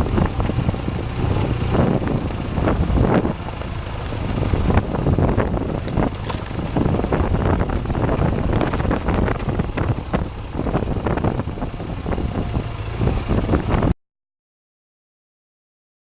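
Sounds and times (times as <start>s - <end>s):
motorcycle riding off-road: 0.0s - 14.0s
wind buffeting microphone: 0.0s - 14.0s
small knocks and rattles: 5.8s - 6.6s.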